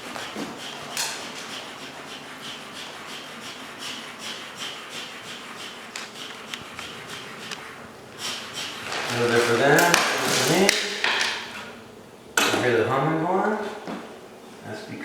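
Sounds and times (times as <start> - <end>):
hand tool rasping on wall: 0.0 - 11.8.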